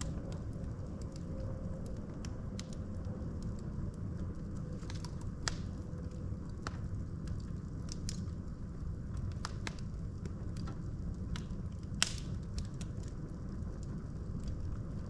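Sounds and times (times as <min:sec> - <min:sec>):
fire crackling and popping: 0:00.0 - 0:15.0
low rumble of flames: 0:00.0 - 0:15.0.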